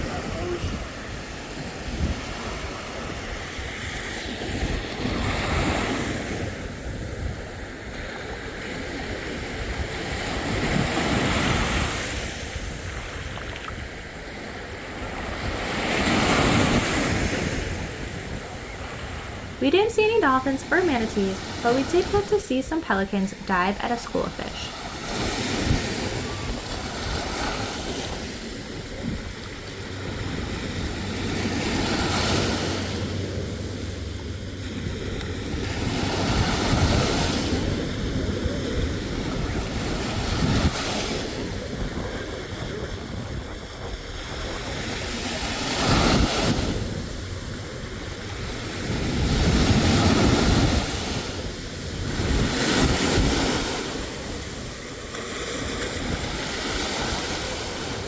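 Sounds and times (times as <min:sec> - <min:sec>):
surf washing onto beach: 0:00.0 - 0:19.6, 0:24.7 - 0:58.0
wind buffeting microphone: 0:36.2 - 0:45.1, 0:45.9 - 0:55.0.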